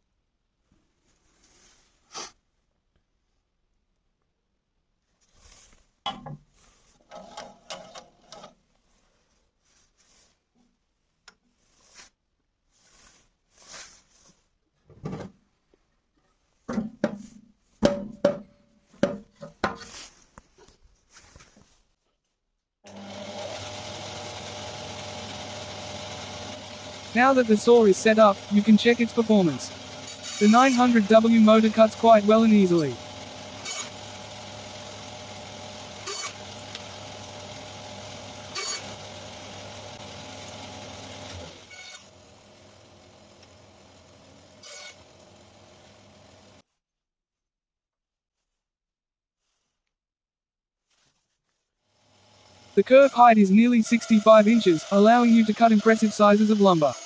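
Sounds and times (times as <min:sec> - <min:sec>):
band saw motor humming: 0:22.9 - 0:46.6, 0:52.0 - 0:57.0.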